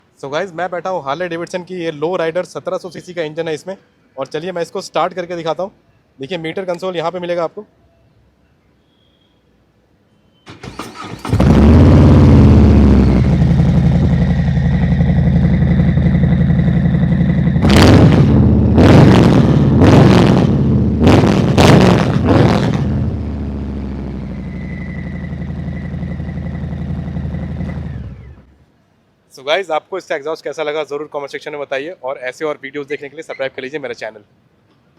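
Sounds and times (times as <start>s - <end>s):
motorcycle engine starter cranking: 10.5s - 14.4s
motorcycle engine idling and revving: 10.5s - 28.5s.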